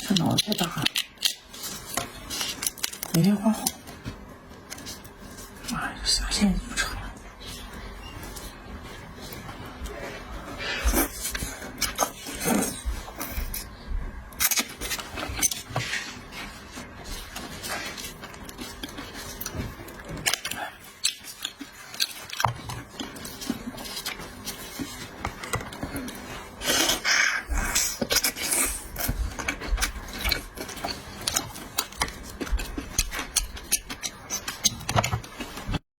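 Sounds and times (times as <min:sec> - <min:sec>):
chewing: 0:17.1 - 0:35.8.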